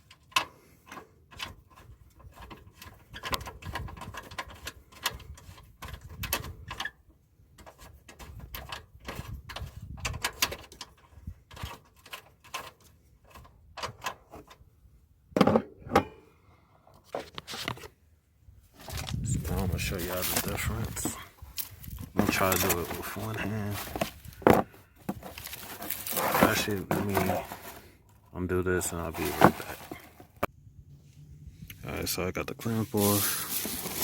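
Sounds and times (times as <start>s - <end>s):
metal parts clunking: 18.8s - 27.9s, 28.8s - 30.5s.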